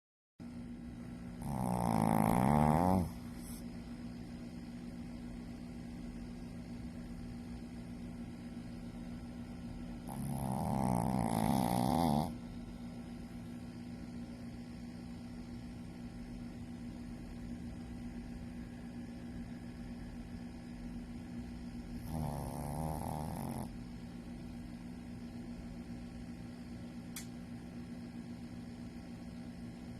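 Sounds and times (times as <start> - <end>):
dog snoring: 1.3 - 3.7, 10.0 - 12.4, 22.0 - 23.8.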